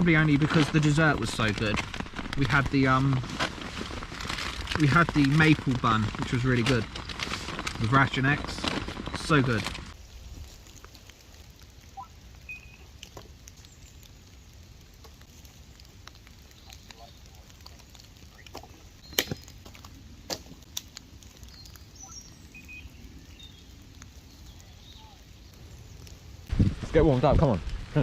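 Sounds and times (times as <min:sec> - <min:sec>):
light taps and crackles: 0:00.0 - 0:28.0
faint bird chirps: 0:11.9 - 0:13.0, 0:21.4 - 0:26.0.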